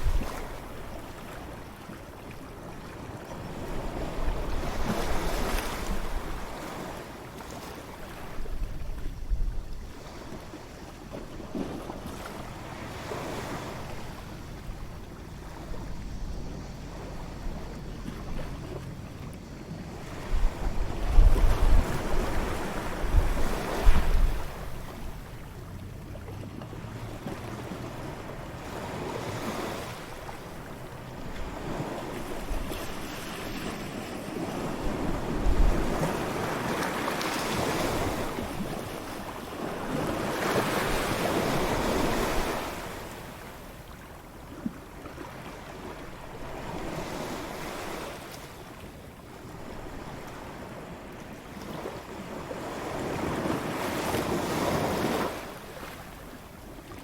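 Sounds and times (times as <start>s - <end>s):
ocean waves breaking: 0.0s - 57.0s
wind thump on microphone: 20.1s - 25.1s.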